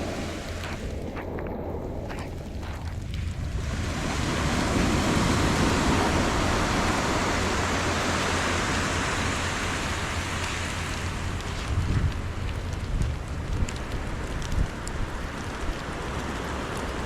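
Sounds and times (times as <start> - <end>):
surf rushing: 0.0 - 11.9
heavy rain: 0.0 - 17.0
wind rumble on microphone: 0.0 - 17.0.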